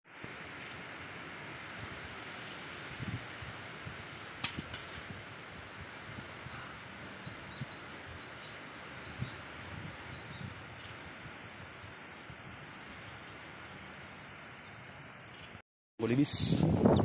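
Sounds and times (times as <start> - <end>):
wind noise: 0.3 - 15.0, 16.0 - 17.0
air rifle shot: 4.4 - 4.9.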